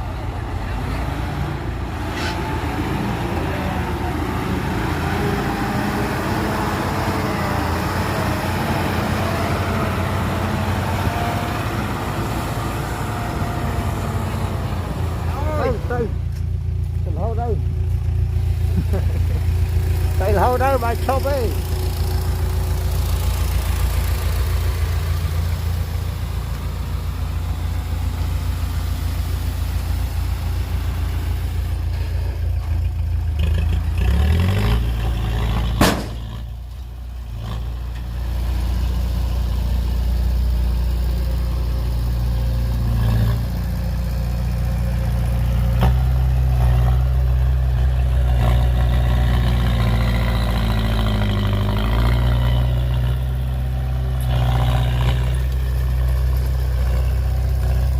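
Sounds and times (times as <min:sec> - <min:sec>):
heavy diesel engine running: 0:00.0 - 0:57.9
sharp knock: 0:35.8 - 0:36.2.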